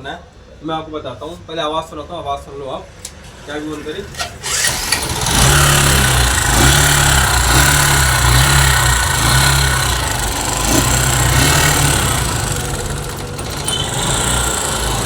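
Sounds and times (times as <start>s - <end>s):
valve train ticking: 4.2s - 15.0s
motorcycle engine idling: 4.4s - 15.0s.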